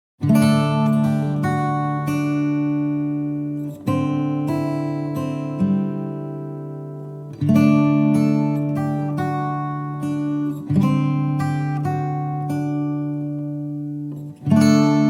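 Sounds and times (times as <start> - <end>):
acoustic guitar strumming chords: 0.2 - 15.0.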